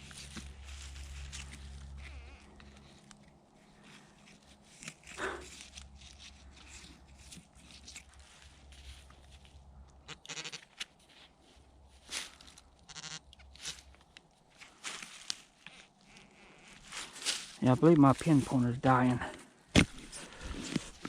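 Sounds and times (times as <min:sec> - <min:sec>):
digging in soil: 0:00.0 - 0:21.0
pulsed pinpointer buzz: 0:10.1 - 0:10.6, 0:12.9 - 0:13.3.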